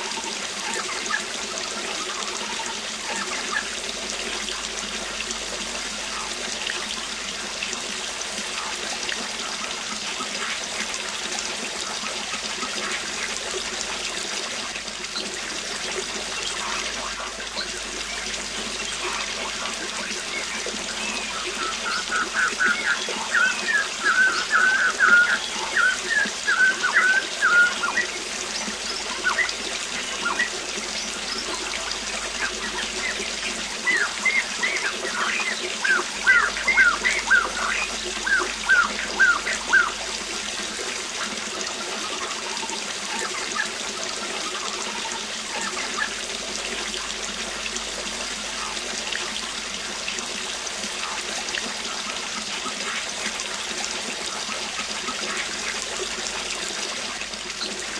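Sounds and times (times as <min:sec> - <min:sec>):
waterfall rushing: 0:15.4 - 0:48.9.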